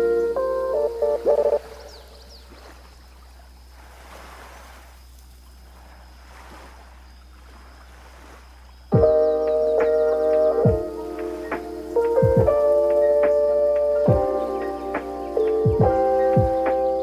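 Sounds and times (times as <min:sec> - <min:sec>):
faint high bird chirps: 0:00.0 - 0:03.4, 0:08.9 - 0:17.0
sea waves washing on beach: 0:00.8 - 0:17.0.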